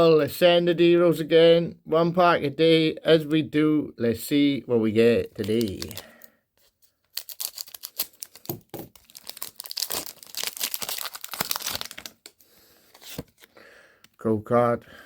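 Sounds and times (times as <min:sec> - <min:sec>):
foil wrapper crinkling and tearing: 0:05.2 - 0:06.3, 0:07.1 - 0:13.4.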